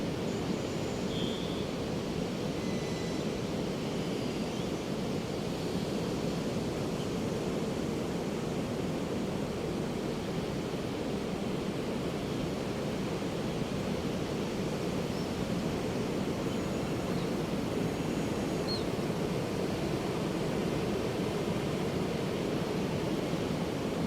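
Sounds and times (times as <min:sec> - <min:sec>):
waves washing on a beach: 0:00.0 - 0:24.0
faint high bird calls: 0:00.3 - 0:01.7, 0:18.0 - 0:18.9.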